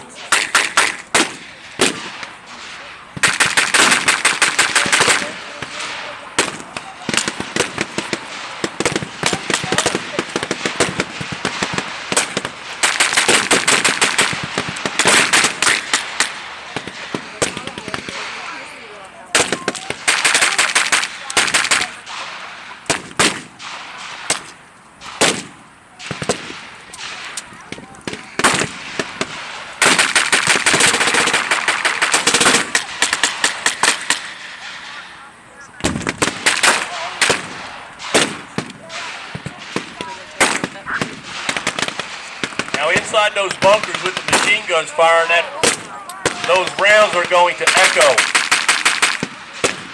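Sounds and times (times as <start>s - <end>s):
rifle shots: 0.2s - 49.9s
machine-gun bursts: 3.2s - 18.2s, 19.4s - 22.0s, 26.0s - 34.8s, 35.8s - 49.9s
rifle single shots: 35.8s - 49.9s.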